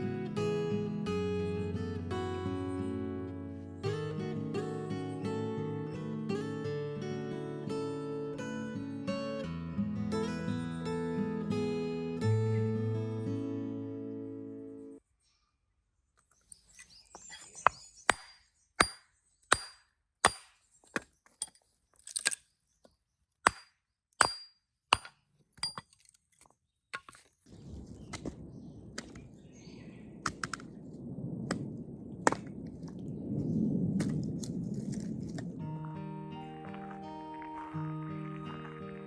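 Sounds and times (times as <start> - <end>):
axe chopping firewood: 17.5 - 21.6, 23.4 - 26.2
sharp cracks: 27.5 - 35.9
low rushing noise: 27.5 - 39.0.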